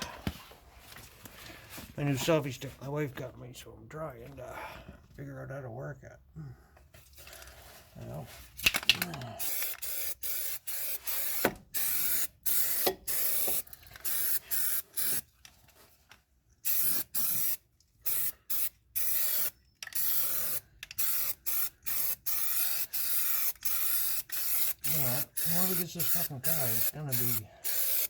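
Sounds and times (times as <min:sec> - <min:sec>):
spray coating hissing bursts: 0:09.4 - 0:15.2, 0:16.6 - 0:28.0.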